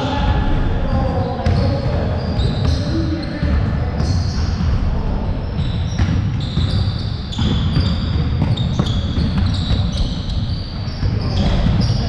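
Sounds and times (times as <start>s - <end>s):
sneakers squeaking on floor: 0.9s - 12.0s
basketball bouncing: 5.5s - 12.0s.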